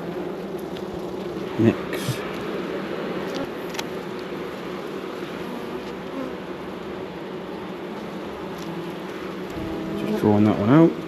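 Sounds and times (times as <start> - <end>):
honey bees buzzing: 0.0 - 11.0.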